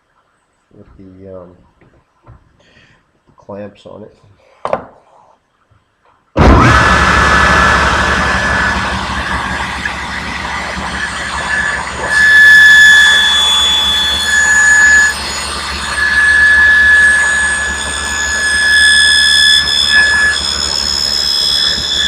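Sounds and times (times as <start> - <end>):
table saw cutting wood: 6.4 - 22.0.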